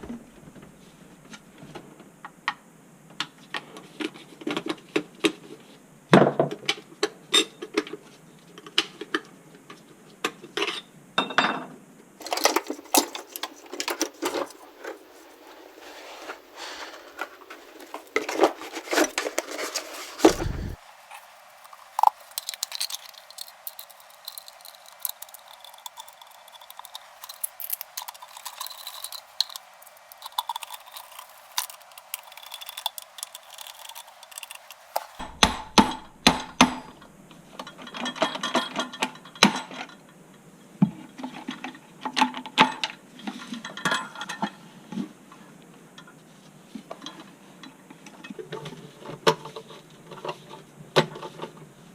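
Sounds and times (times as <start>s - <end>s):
metal tools clinking: 12.2s - 37.0s.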